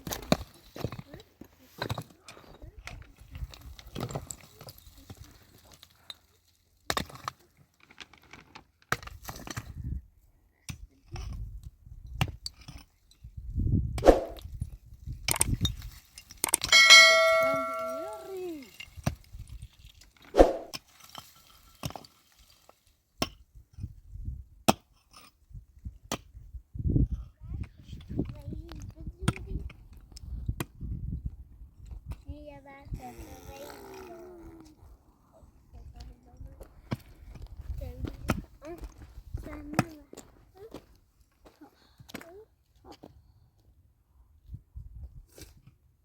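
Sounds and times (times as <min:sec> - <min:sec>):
loud metallic clang: 0:16.7 - 0:18.4.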